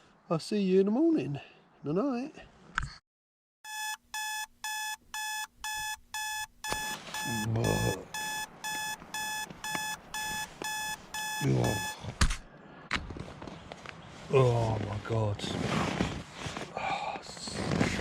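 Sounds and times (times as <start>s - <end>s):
electronic alarm beeping rapidly: 3.6s - 12.0s.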